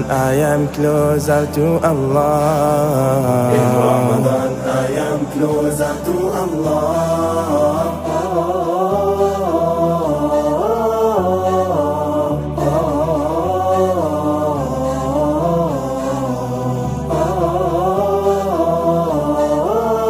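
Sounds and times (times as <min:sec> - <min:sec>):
low held bass notes: 0:00.0 - 0:20.0
wordless chanted vocal melody: 0:00.0 - 0:20.0.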